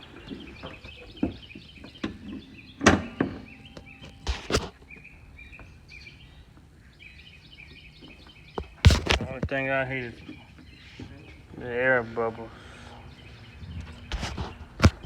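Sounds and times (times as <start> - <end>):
small birds chirping: 0.0 - 15.0
sharp thumps: 2.8 - 4.8, 8.6 - 9.5, 13.5 - 15.0.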